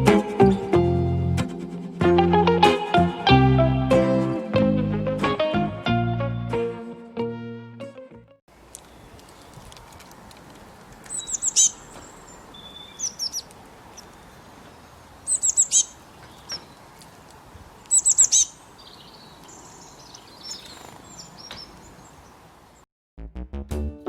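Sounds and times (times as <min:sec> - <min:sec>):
small bird chirping: 0:11.0 - 0:16.9, 0:17.8 - 0:22.5.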